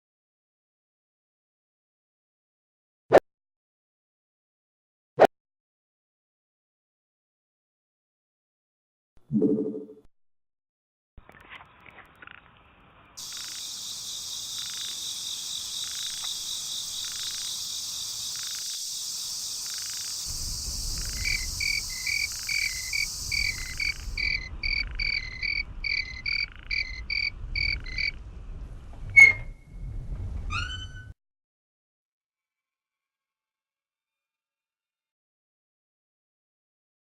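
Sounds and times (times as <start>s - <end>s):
frog calling: 13.2s - 28.2s
insects buzzing: 13.2s - 28.2s
low rumble: 20.3s - 30.5s.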